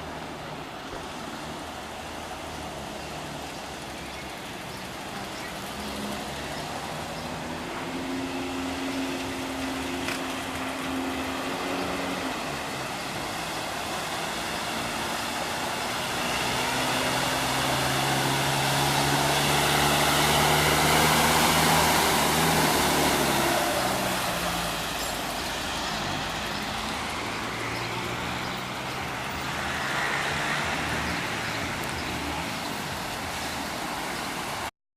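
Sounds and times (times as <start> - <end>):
vehicles on a wet road: 0.0 - 34.7
rain hiss: 8.8 - 34.7.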